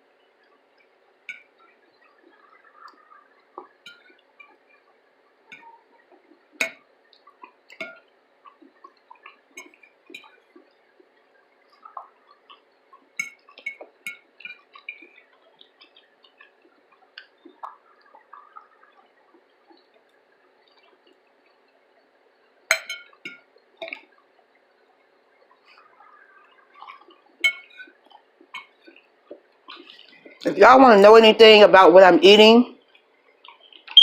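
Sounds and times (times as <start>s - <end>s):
person chewing: 33.4s - 34.0s.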